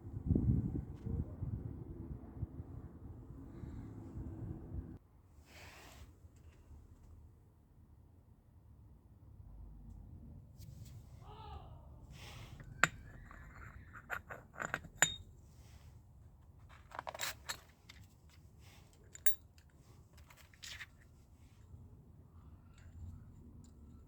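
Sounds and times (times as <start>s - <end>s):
metallic clinks and scrapes: 12.5s - 15.9s, 16.6s - 21.2s.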